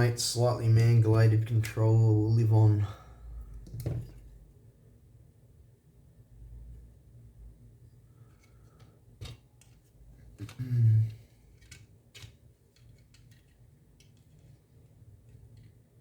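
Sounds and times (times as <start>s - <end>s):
low hum or grunt: 10.4s - 11.3s.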